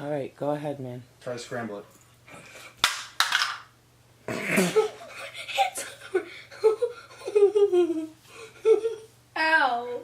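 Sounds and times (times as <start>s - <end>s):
people laughing and giggling: 4.4s - 9.1s.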